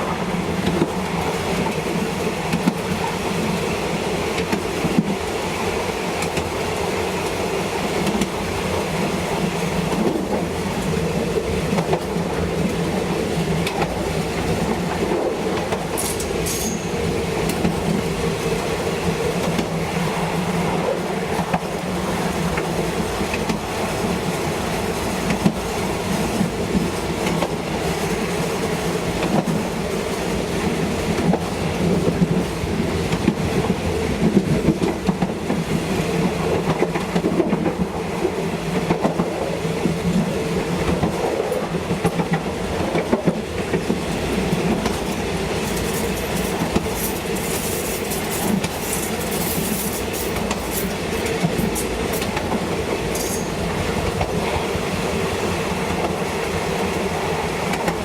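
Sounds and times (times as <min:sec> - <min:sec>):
diesel train engine drone: 0:00.0 - 0:58.0
wheels clattering on rails: 0:09.8 - 0:19.8, 0:29.1 - 0:54.8
wheels squeaking and clicking: 0:53.1 - 0:53.6.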